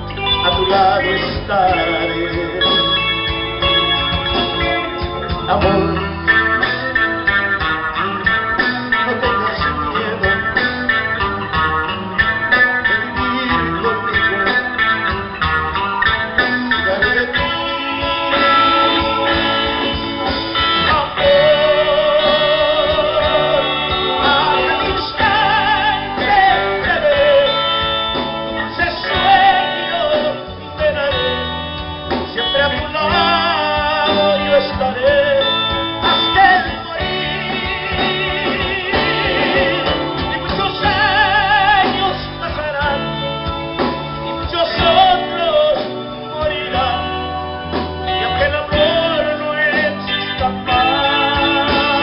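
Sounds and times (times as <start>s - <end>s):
band playing slow love song: 0.0s - 52.0s.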